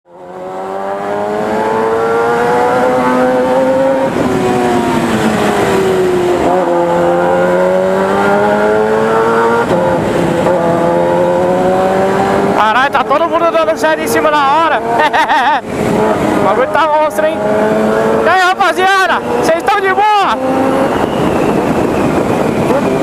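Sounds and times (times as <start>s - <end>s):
motorcycle accelerating through gears: 0.1s - 23.0s.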